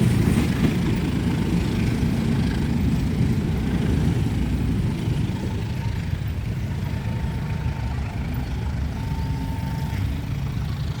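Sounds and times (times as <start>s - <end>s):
diesel locomotive engine rumbling: 0.0s - 11.0s.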